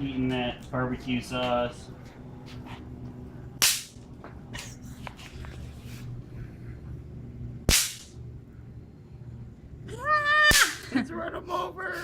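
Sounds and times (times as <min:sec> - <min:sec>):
bang snap cracking: 0:03.6 - 0:04.0, 0:07.7 - 0:08.2.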